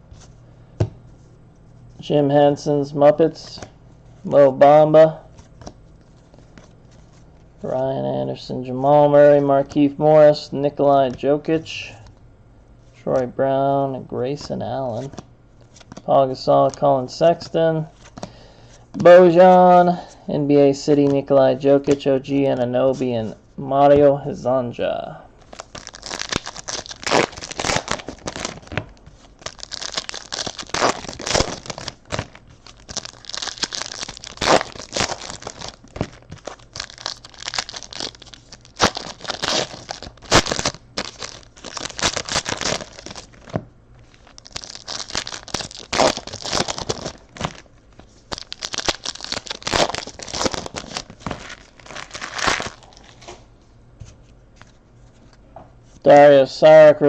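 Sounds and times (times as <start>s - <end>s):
card pack wrappers tearing and crinkling: 25.4s - 53.3s.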